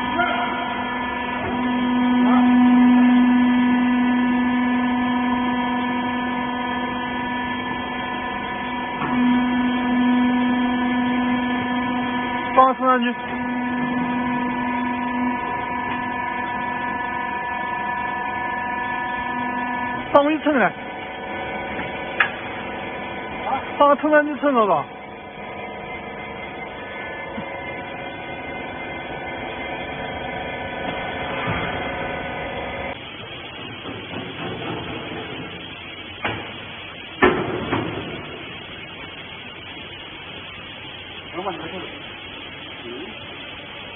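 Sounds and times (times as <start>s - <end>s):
electric motor and pump humming: 0.0s - 43.9s.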